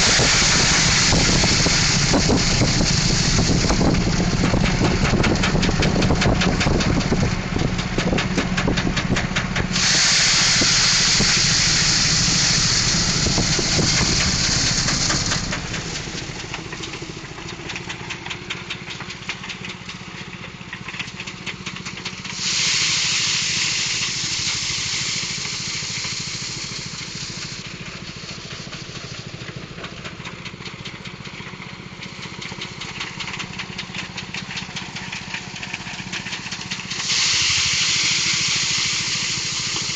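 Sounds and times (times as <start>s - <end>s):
loud rushing hiss: 0.0s - 19.9s, 21.7s - 29.5s, 32.1s - 39.9s
threshing machine engine drone: 0.0s - 39.9s.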